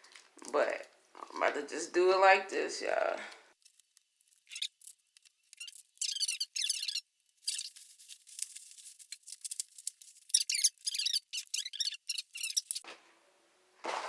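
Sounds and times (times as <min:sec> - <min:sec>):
food packaging crinkling: 0:03.6 - 0:11.6.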